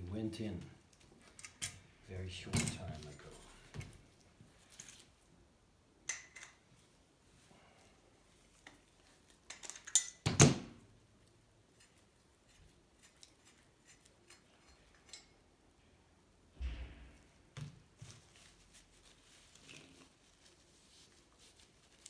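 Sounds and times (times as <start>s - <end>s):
thump: 16.6s - 17.7s.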